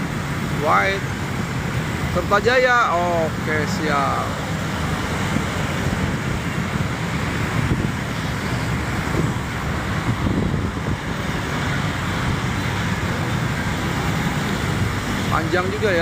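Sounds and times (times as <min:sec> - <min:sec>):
moving vehicle rumbling: 0:00.0 - 0:16.0
wind on microphone: 0:04.3 - 0:15.4.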